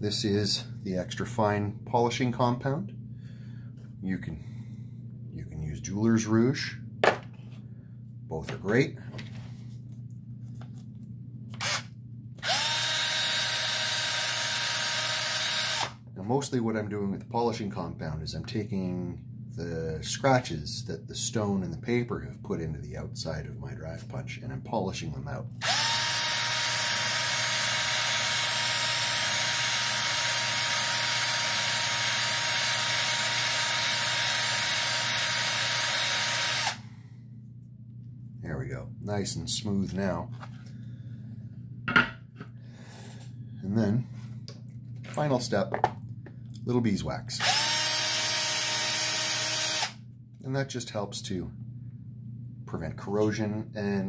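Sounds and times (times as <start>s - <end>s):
electric drill whining: 11.6s - 16.0s, 25.6s - 36.8s, 47.4s - 50.0s.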